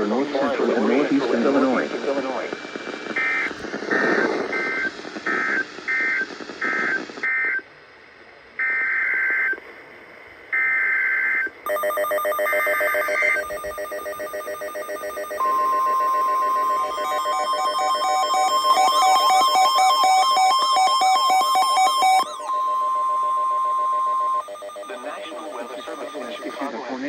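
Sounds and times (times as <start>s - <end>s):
single-pitch warning alarm tone: 11.7s - 26.7s
two-tone warbling data bursts: 11.7s - 26.7s
electronic music: 15.4s - 26.6s.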